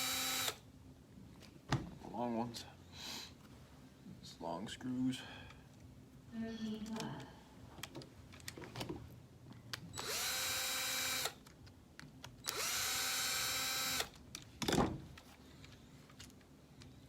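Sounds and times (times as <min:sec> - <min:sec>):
power screwdriver whining: 0:00.0 - 0:00.6, 0:10.0 - 0:11.4, 0:12.4 - 0:14.2.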